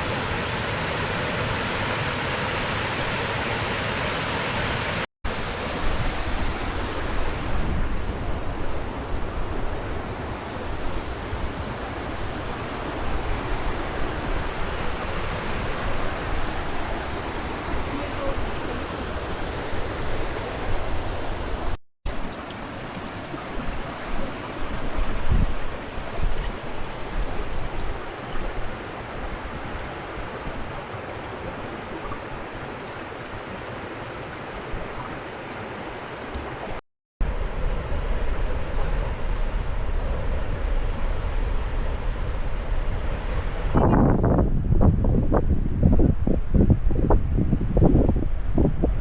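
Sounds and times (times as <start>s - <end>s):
waterfall rushing: 0.0s - 7.6s, 22.1s - 36.8s
wind buffeting microphone: 5.4s - 35.3s, 36.7s - 49.0s
low gusty rumbles: 37.2s - 49.0s.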